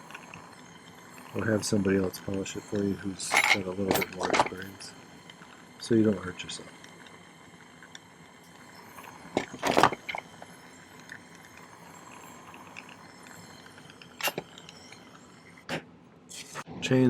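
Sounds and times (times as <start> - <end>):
chain links clinking: 8.4 - 15.2.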